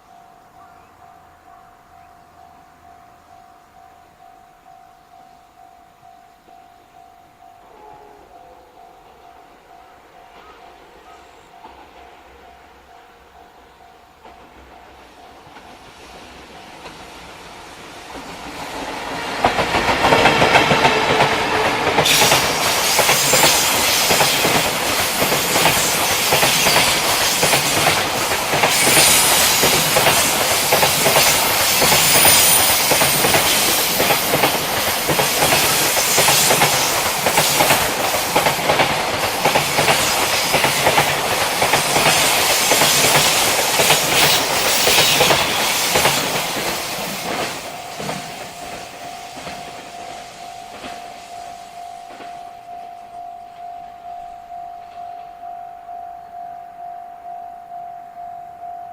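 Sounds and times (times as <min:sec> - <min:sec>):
freight train passing: 0:00.0 - 0:55.5
wagons rattling clickety-clack: 0:19.4 - 0:51.0.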